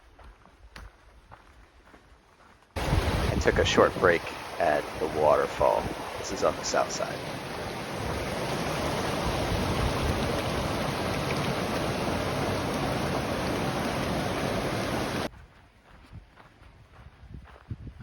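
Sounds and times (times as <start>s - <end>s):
waterfall rushing: 2.8s - 15.3s.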